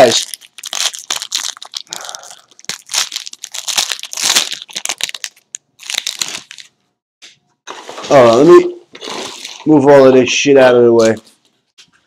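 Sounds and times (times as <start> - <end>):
plastic packaging crinkling: 0.0 - 6.8, 8.9 - 9.8.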